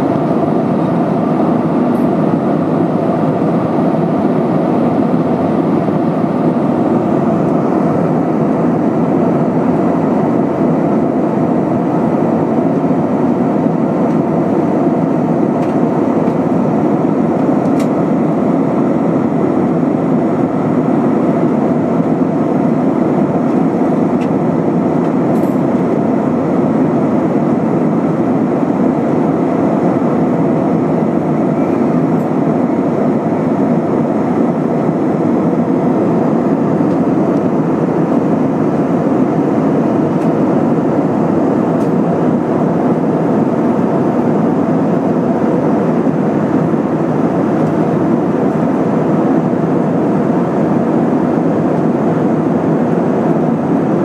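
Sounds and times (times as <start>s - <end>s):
airflow over fuselage: 0.0s - 54.0s
airplane cabin engine drone: 0.0s - 54.0s.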